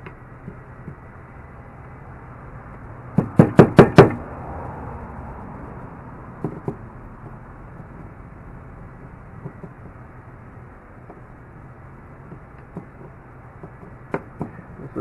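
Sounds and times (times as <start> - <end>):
sharp knocks on wood: 3.1 - 4.2, 6.4 - 8.1, 9.4 - 10.0, 12.3 - 14.6.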